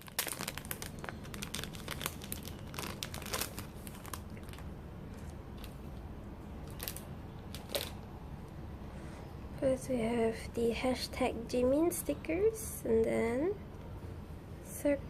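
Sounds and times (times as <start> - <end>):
plastic packaging crinkling: 0.0 - 5.8, 6.6 - 8.0.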